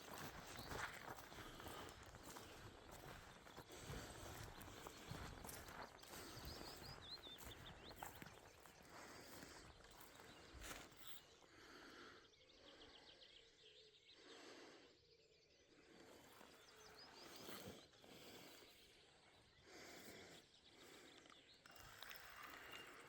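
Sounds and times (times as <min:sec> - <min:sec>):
distant bird chirps: 0:00.1 - 0:23.0.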